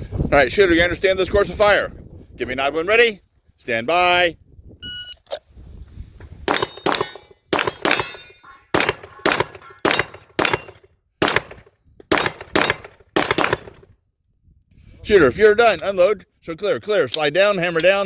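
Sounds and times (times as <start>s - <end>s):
rapid pistol shots: 6.5s - 8.2s, 8.8s - 13.8s
bullet clanging on steel target: 6.5s - 10.9s.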